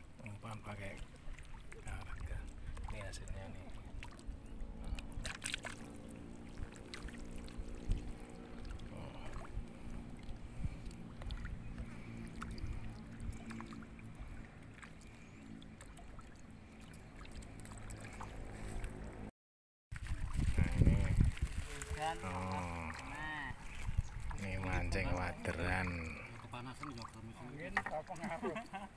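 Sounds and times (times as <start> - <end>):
low engine hum: 0.0 - 19.3.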